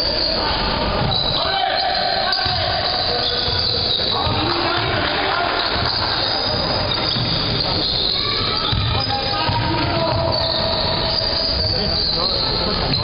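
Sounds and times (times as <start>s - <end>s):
sneakers squeaking on court: 0.0s - 13.0s
voices of players and spectators: 0.0s - 13.0s
basketball bouncing: 2.3s - 12.1s.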